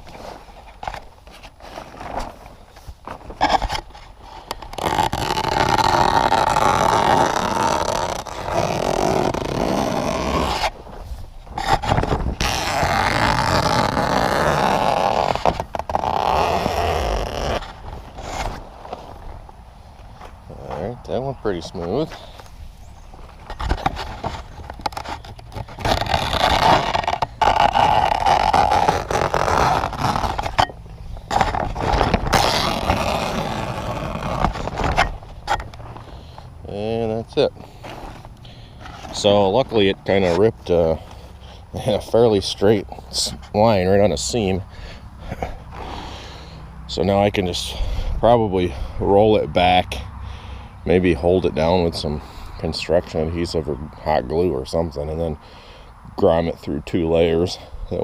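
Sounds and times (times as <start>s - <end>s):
fabric canopy scraping on metal: 4.7s - 19.2s, 23.5s - 30.7s, 31.3s - 35.6s.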